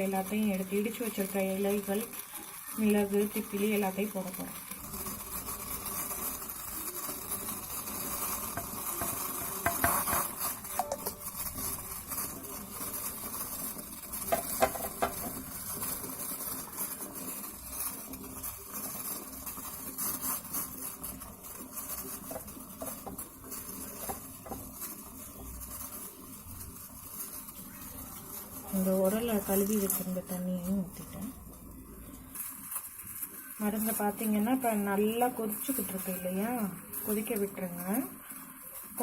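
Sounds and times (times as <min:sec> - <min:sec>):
water boiling and bubbling: 0:00.0 - 0:39.0
spoon scraping and knocking: 0:08.2 - 0:12.4, 0:14.1 - 0:15.5, 0:22.0 - 0:24.8.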